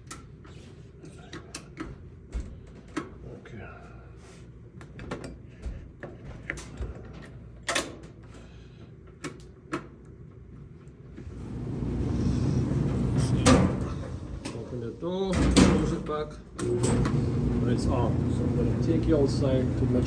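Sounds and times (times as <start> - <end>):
dryer drum motor and blower running: 11.2 - 20.0
dryer door and controls clicking: 11.5 - 20.0.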